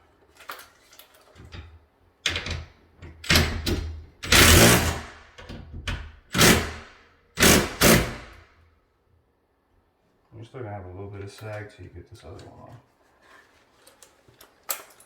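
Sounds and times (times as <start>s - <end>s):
power screwdriver bursts: 4.2s - 5.2s, 6.3s - 8.4s.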